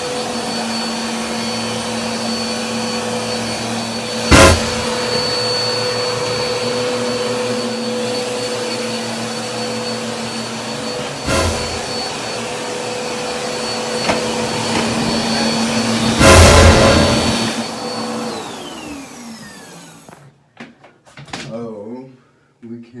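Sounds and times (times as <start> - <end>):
vacuum cleaner running: 0.0 - 20.4.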